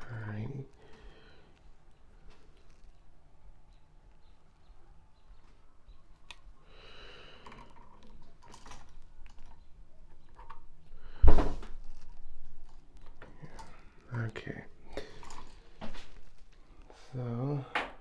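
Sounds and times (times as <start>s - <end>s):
hand tools clicking and scraping wire: 7.2s - 10.9s, 11.9s - 17.5s.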